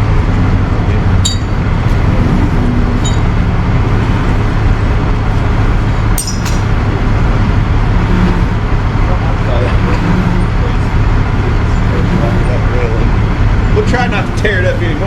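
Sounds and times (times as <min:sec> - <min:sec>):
vehicle engine rumbling: 0:00.0 - 0:15.0
sharp metallic clinks: 0:01.2 - 0:01.6, 0:03.0 - 0:03.4, 0:06.2 - 0:06.7.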